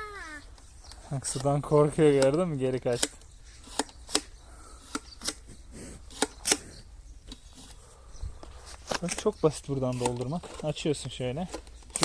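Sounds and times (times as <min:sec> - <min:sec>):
clicks and knocks from handling: 0:08.4 - 0:12.0.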